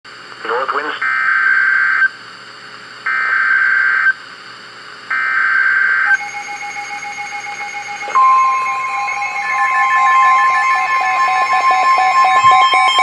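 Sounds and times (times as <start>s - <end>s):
buzzing data tones: 5.1s - 13.0s
loud steady alert tone: 5.1s - 13.0s
faint steady tones: 6.1s - 13.0s.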